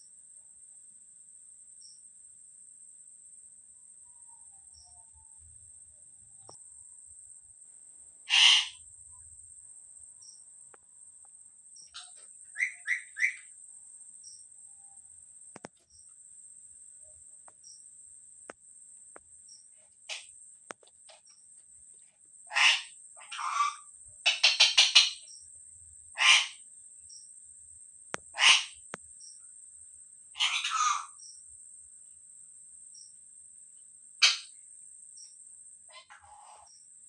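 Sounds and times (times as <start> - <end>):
parrot squawking: 8.3 - 8.8, 22.5 - 25.2, 26.2 - 26.6, 28.4 - 28.7, 30.4 - 31.1.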